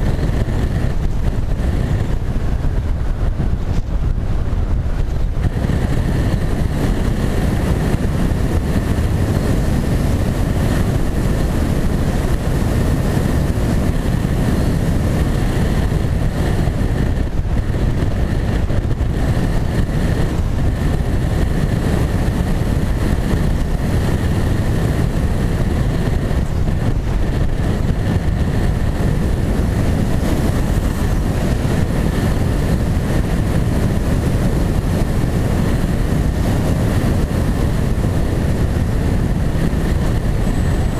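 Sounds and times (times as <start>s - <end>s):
motor and propeller whine: 0.0s - 40.9s
wind rushing over microphone: 0.0s - 40.9s.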